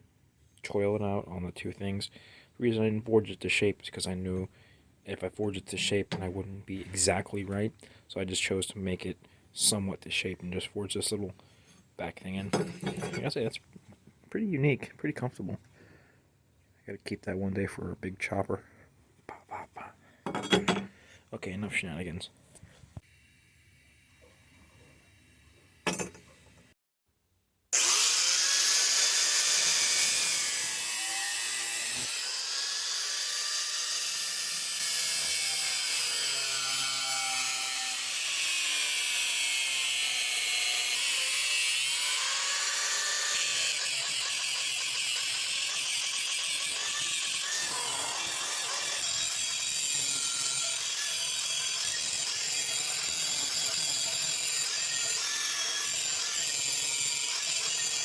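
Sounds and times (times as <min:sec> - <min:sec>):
power grinder grinding steel: 0:12.6 - 0:13.3, 0:27.8 - 0:58.0.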